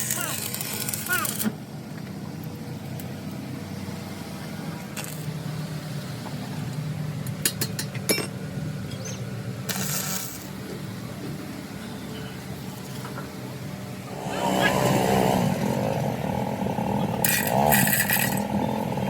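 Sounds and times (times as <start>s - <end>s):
low mechanical hum: 0.0s - 19.0s.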